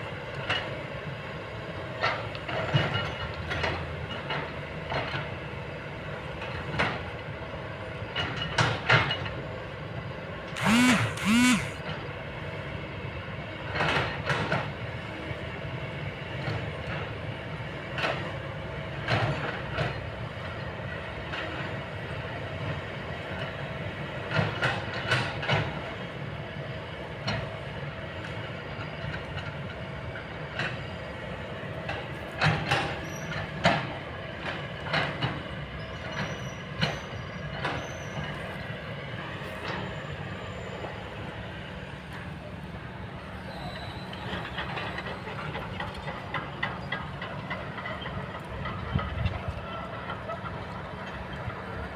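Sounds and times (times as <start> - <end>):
excavator engine hum: 0.0 - 51.9
short squeals: 10.6 - 11.8, 43.4 - 45.3.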